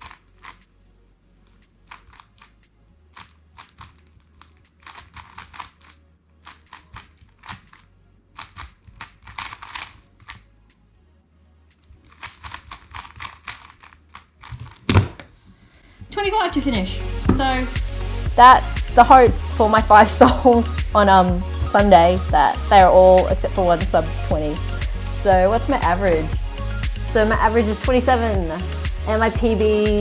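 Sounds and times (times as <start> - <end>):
speed cube clicking: 0.0 - 0.7, 1.5 - 10.5, 11.8 - 14.9.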